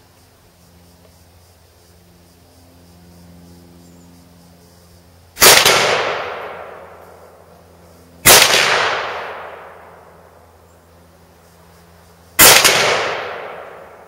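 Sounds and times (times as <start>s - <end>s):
loud blasts with echo: 5.4s - 6.9s, 8.2s - 9.9s, 12.4s - 14.0s.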